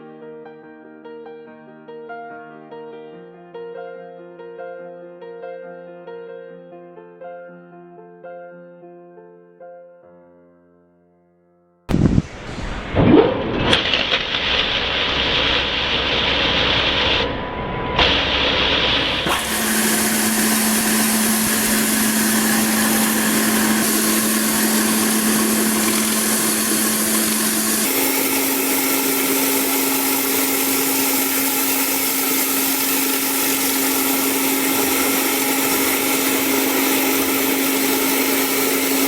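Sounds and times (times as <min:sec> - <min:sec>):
water spray hissing: 0:11.9 - 0:17.3, 0:18.0 - 0:39.0
pressure washer motor hum: 0:11.9 - 0:39.0.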